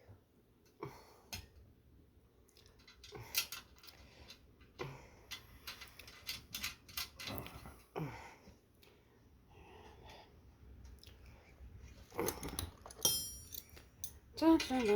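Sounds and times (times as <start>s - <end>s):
metal hardware clicks and taps: 12.3s - 14.9s.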